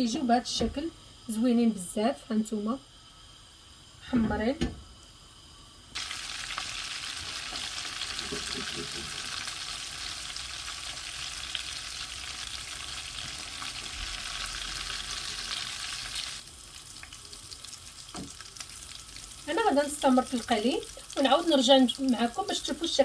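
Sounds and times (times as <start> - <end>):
food deep-frying in hot oil: 5.4 - 23.0.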